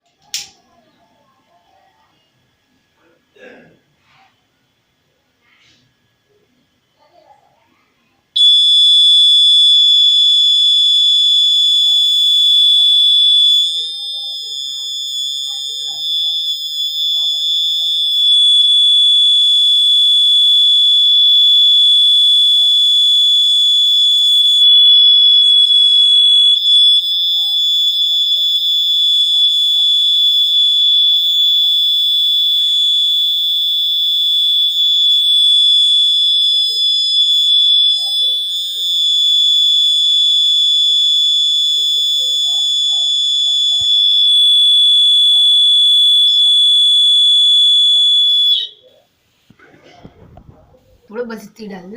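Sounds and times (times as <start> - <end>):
high-pitched alarm buzzer tone: 8.4 - 48.9.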